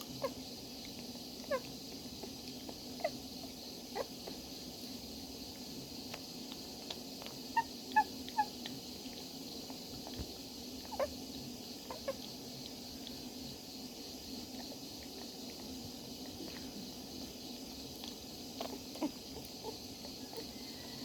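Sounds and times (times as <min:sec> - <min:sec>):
puppies squeaking: 0:07.5 - 0:08.5, 0:10.9 - 0:11.1.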